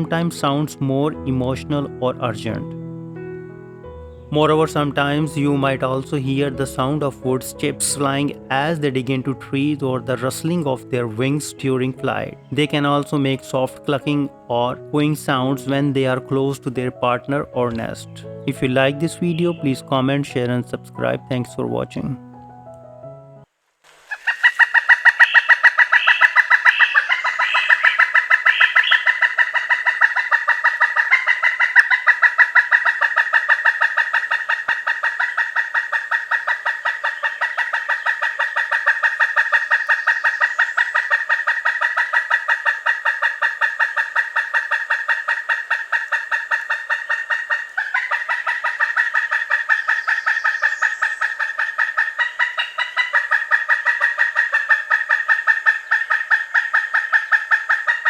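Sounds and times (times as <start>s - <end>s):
woodpecker calling: 0.0s - 22.9s, 24.0s - 58.0s.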